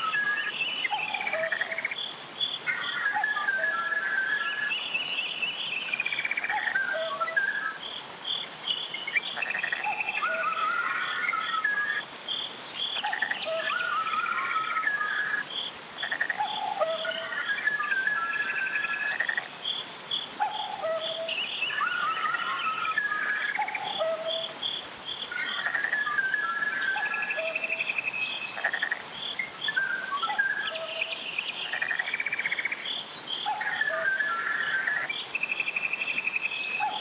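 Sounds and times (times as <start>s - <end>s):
faint hiss: 0.0s - 37.0s
birds calling: 2.7s - 4.8s, 9.1s - 12.1s, 12.8s - 19.5s, 20.4s - 24.5s, 25.2s - 35.1s.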